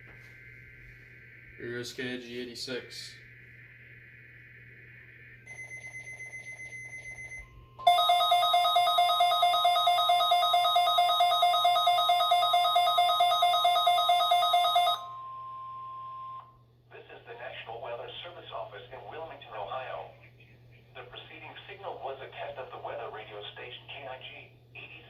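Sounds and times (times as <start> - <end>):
rapidly pulsing alarm beeps: 0.0 - 16.6
steady warning alarm tone: 0.0 - 16.6.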